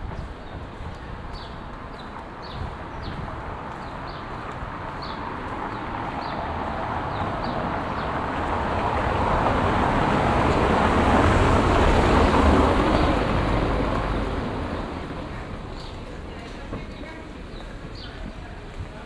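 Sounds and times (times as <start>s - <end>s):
vehicle passing by: 5.2s - 15.8s.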